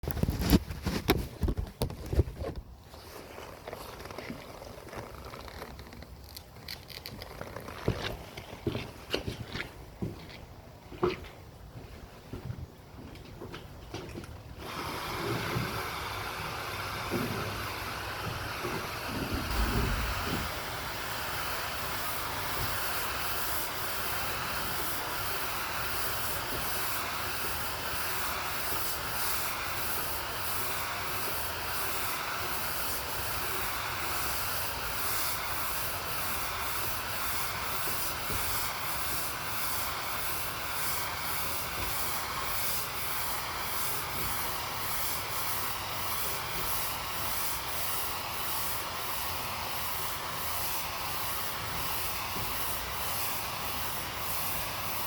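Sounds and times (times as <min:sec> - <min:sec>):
pressure washer water spraying: 0:02.9 - 0:08.8, 0:14.6 - 0:55.0.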